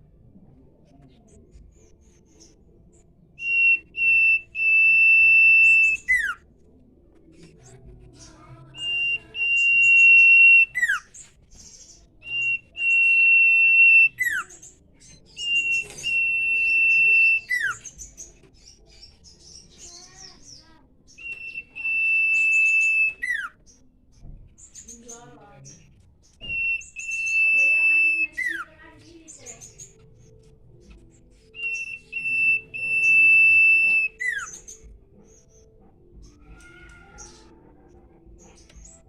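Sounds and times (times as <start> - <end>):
bird whistling: 3.4 - 6.4, 8.8 - 11.2, 12.2 - 14.7, 15.3 - 17.9, 21.2 - 23.6, 26.4 - 28.8, 31.6 - 34.8.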